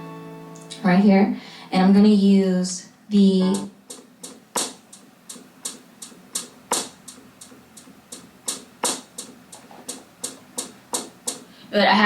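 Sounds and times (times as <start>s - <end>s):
electronic drum pattern: 3.2s - 11.5s.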